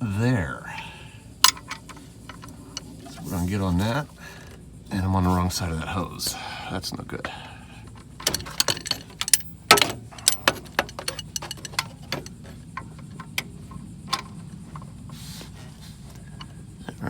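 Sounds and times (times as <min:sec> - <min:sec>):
hand tools clinking: 0:01.4 - 0:04.6, 0:07.3 - 0:16.7.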